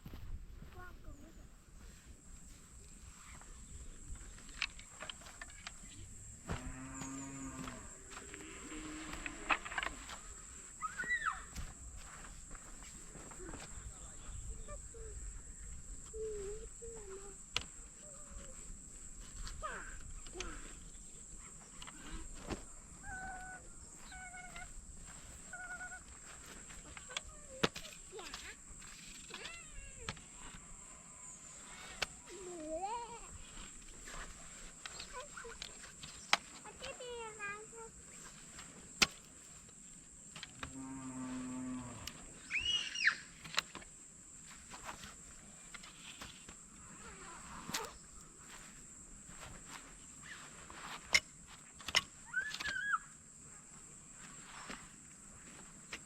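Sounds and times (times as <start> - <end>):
animal calling: 42.4 - 43.3.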